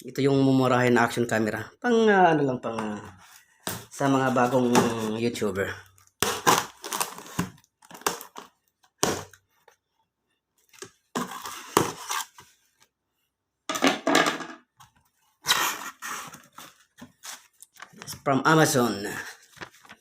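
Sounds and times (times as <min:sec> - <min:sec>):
packaging crinkling and tearing: 0:05.9 - 0:09.4, 0:19.4 - 0:20.0.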